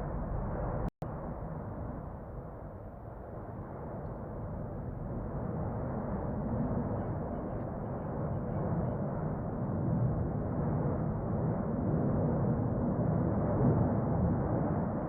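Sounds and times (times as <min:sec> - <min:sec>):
volcano deep rumble: 0:00.0 - 0:15.0.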